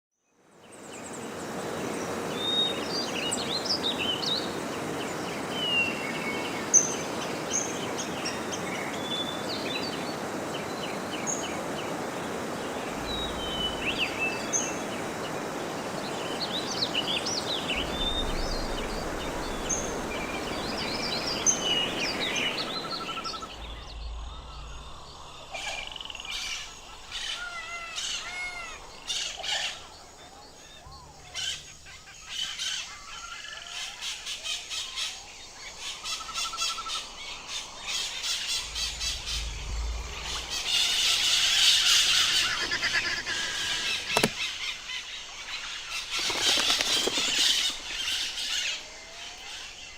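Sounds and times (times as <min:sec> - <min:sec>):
steady background hiss: 0:00.5 - 0:49.9
birds chirping and calling: 0:12.9 - 0:49.9.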